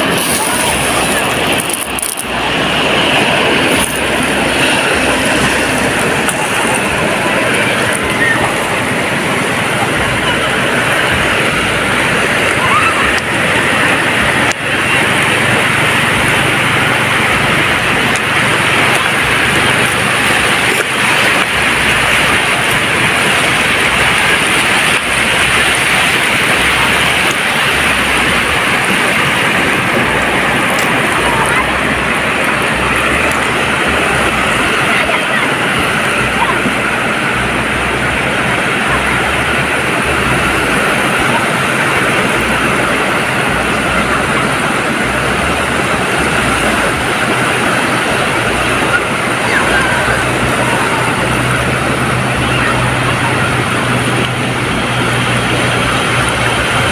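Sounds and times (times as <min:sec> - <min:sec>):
low rumble: 0:00.0 - 0:56.9
ocean surf roaring: 0:00.0 - 0:56.9
waves breaking on a beach: 0:00.0 - 0:56.9.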